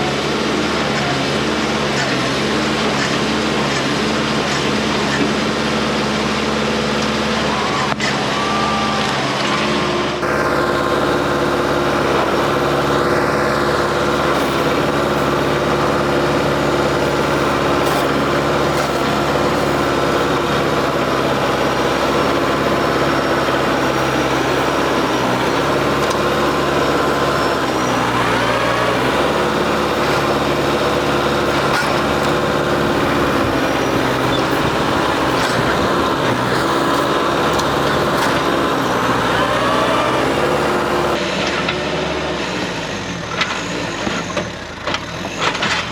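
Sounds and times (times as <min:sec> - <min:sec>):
tractor diesel engine running: 0:09.3 - 0:41.2.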